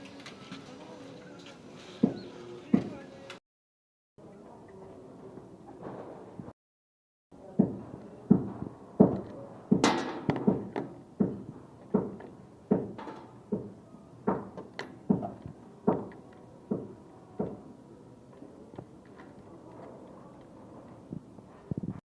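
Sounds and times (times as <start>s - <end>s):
sharp knocks: 7.6s - 16.1s.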